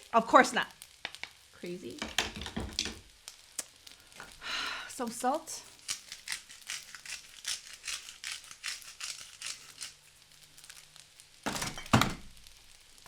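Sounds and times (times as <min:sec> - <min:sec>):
salt shaker rattling: 0:05.8 - 0:10.1.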